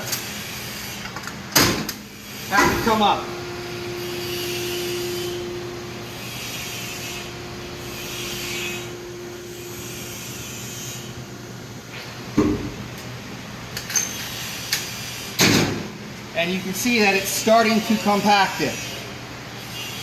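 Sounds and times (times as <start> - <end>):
hydraulic pump motor humming: 2.1 - 13.0.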